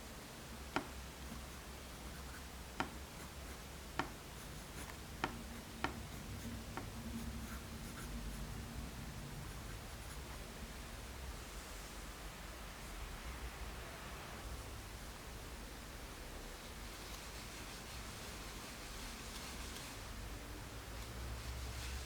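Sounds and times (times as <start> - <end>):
pencil scratching on paper: 0.8 - 8.7.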